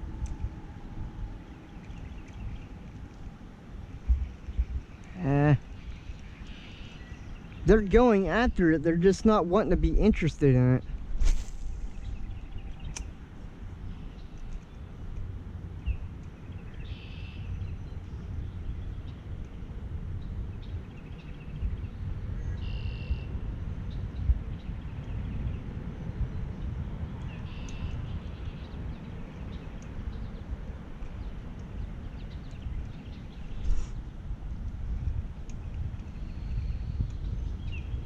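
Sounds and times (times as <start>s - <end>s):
wind rumbling on microphone: 0.0s - 38.0s.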